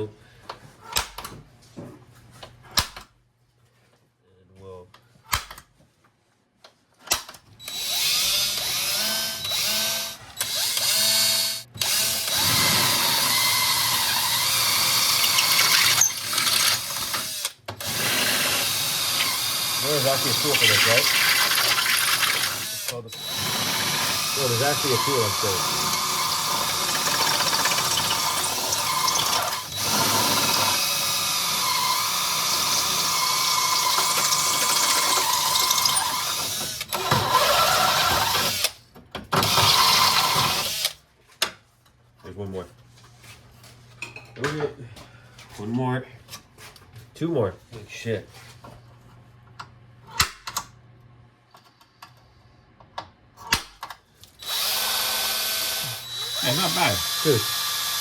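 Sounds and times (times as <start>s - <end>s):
power drill boring metal: 7.7s - 38.8s, 39.4s - 41.0s, 54.4s - 58.0s.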